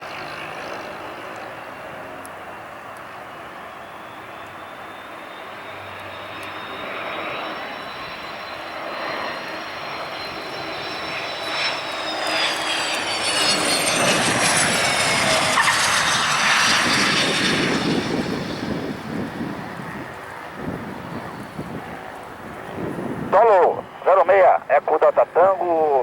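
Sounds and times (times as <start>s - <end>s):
jet engines whining and roaring: 0.0s - 26.0s.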